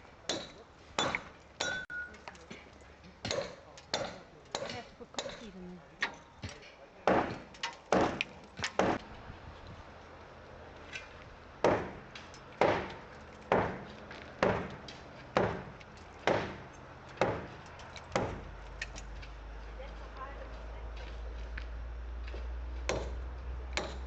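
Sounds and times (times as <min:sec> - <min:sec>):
tool chopping into a wall: 0:06.1 - 0:09.0, 0:11.6 - 0:12.0, 0:12.6 - 0:14.8, 0:15.4 - 0:16.6, 0:17.2 - 0:17.5, 0:22.9 - 0:23.2, 0:23.8 - 0:24.0.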